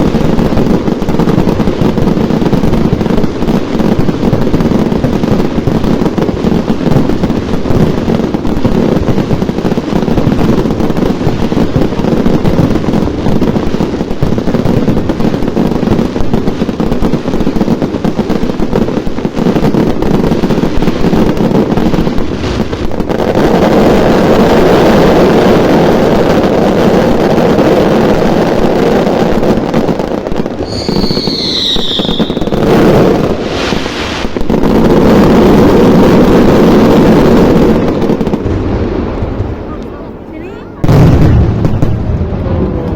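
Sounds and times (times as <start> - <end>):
fireworks bangs and crackling: 0.0 - 42.9
high falling whistle: 30.7 - 32.5.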